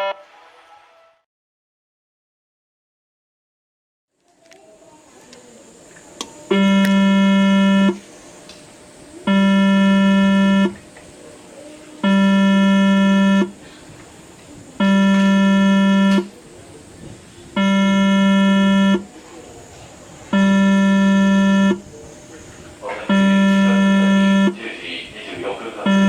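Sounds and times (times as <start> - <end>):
train approach warning buzzer: 6.5 - 8.1, 9.2 - 10.8, 12.0 - 13.6, 14.8 - 16.4, 17.5 - 19.2, 20.2 - 24.9, 25.7 - 26.0.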